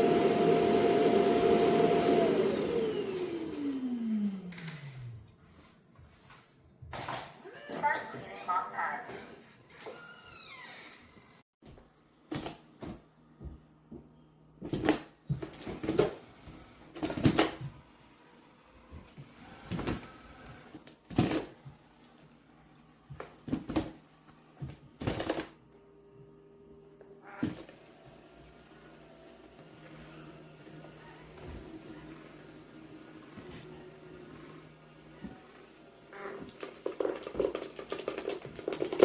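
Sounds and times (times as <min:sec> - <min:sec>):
base station hum: 0:00.0 - 0:05.0.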